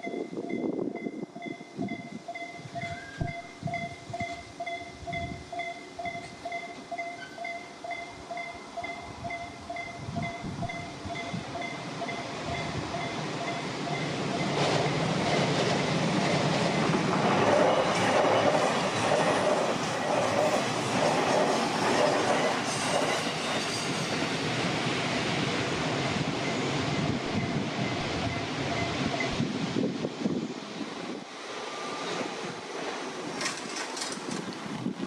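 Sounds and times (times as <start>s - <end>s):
crossing alarm beeps: 0.0s - 15.6s, 26.4s - 29.4s
train rumble: 0.0s - 35.0s
wheels clattering over rails: 14.3s - 24.0s, 33.2s - 34.8s.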